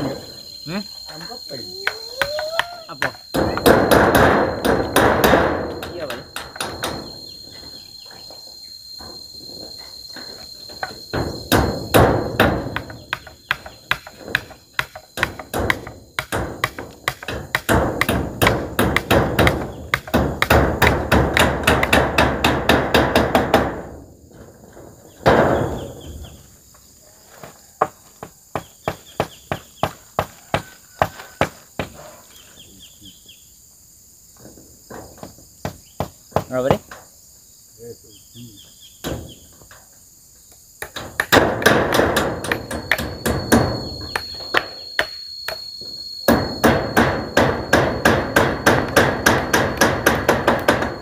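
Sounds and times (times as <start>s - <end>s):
hammer striking metal roofing: 1.8s - 7.3s, 10.7s - 24.0s, 25.2s - 26.0s, 40.8s - 45.6s, 46.2s - 51.0s.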